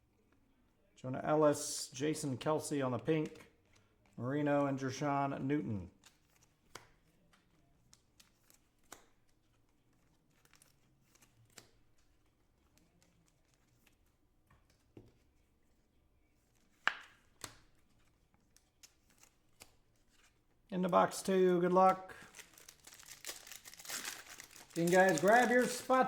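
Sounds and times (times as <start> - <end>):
trading cards being handled: 5.9 - 26.0.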